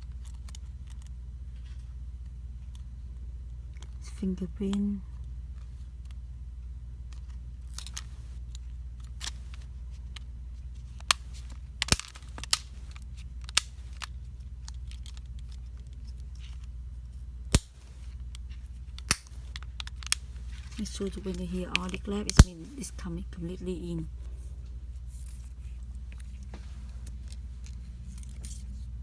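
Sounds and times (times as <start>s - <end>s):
plastic clips snapping: 11.8s - 14.1s, 17.5s - 18.0s, 19.0s - 22.6s.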